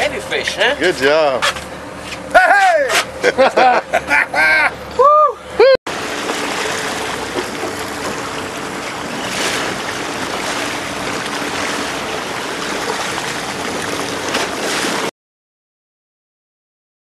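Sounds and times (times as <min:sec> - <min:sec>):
faint engine hum: 0:00.0 - 0:15.1
water rushing: 0:05.9 - 0:15.1.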